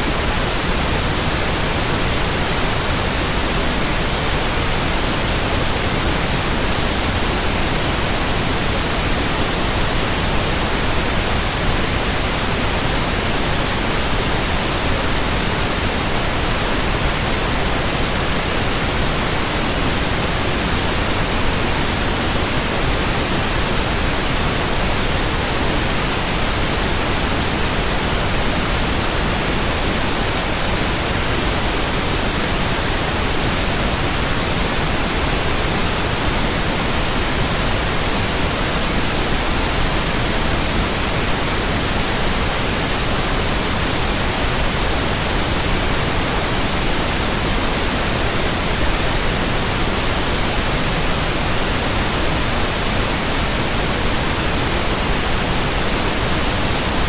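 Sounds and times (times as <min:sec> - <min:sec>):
steady white noise hiss: 0:00.0 - 0:57.0.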